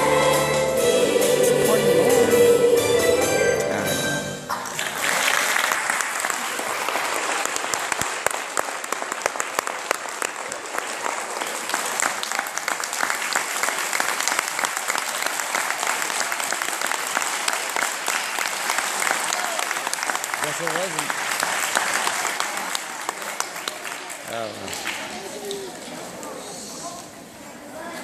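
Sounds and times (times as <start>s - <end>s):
choir music: 0.0s - 4.5s
audience applauding: 4.5s - 25.8s.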